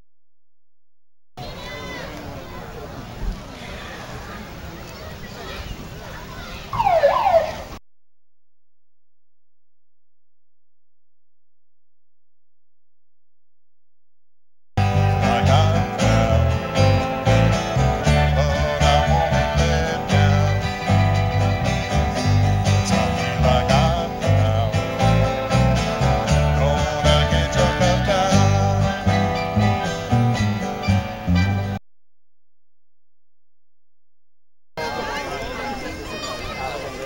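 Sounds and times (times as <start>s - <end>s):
country bluegrass music: 14.8s - 31.8s.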